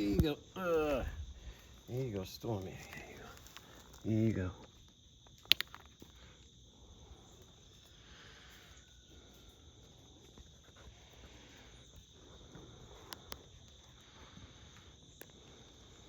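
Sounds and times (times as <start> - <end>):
insects chirping: 0.0 - 16.0
sharp clicks: 5.3 - 5.9.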